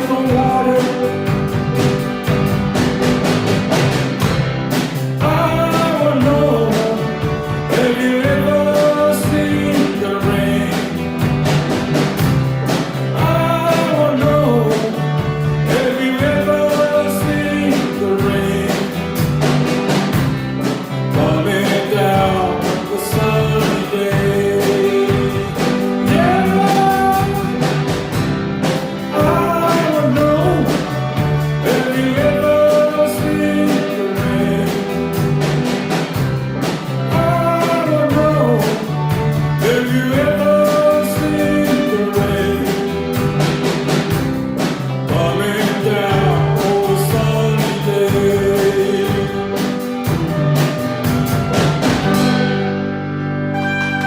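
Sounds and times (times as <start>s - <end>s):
person singing: 0.0s - 2.0s, 5.0s - 11.2s, 12.9s - 19.4s, 20.9s - 28.1s, 28.9s - 35.4s, 36.8s - 43.7s, 44.9s - 52.8s
live rock band playing: 0.0s - 54.0s.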